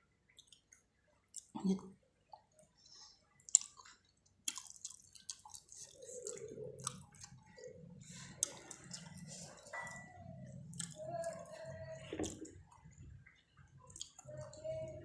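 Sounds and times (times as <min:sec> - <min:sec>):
wet chewing and lip smacks: 0:00.3 - 0:01.6, 0:03.4 - 0:07.6, 0:08.2 - 0:10.1, 0:10.7 - 0:11.5, 0:13.8 - 0:14.6.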